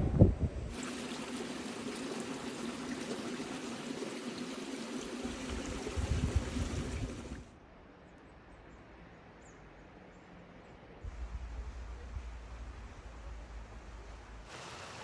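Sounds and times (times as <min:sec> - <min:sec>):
running water rushing: 0:00.7 - 0:07.5, 0:13.5 - 0:15.0.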